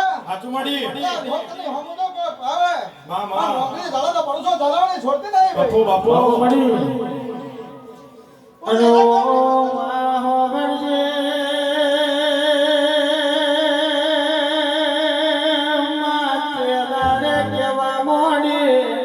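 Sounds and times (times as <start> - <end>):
musical accompaniment: 17.0 - 17.7
person singing long vibrato note: 17.0 - 18.1.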